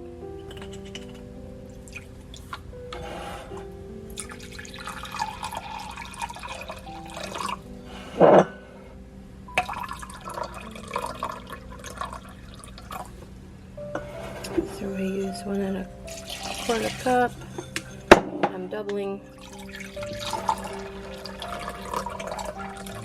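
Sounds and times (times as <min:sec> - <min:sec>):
background music: 0:00.0 - 0:23.0
water pouring and splashing: 0:04.2 - 0:07.6, 0:16.0 - 0:18.3, 0:19.3 - 0:23.0.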